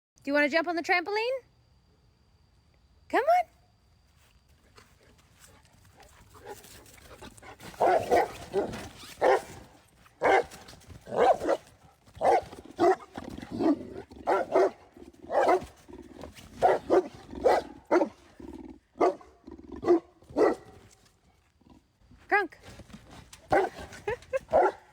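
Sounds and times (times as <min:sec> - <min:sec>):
dog barking: 0:07.7 - 0:15.8, 0:16.6 - 0:18.2, 0:19.0 - 0:20.8, 0:23.5 - 0:23.9, 0:24.5 - 0:24.9.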